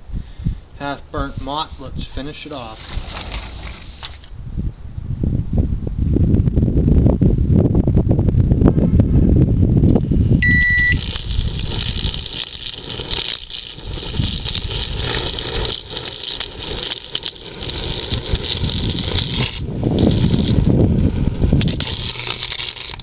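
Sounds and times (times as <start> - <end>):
low rumble: 4.4 - 13.2, 17.5 - 22.3
microwave beep: 10.4 - 11.0.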